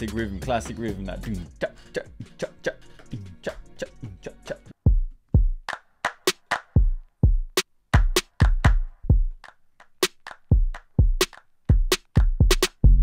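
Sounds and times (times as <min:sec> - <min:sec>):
drum machine beat: 0:00.0 - 0:13.0.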